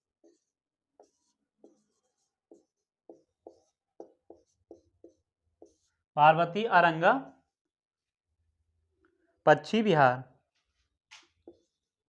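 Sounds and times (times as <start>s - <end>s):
pen scratching handwriting: 0.0s - 5.9s, 11.4s - 12.0s.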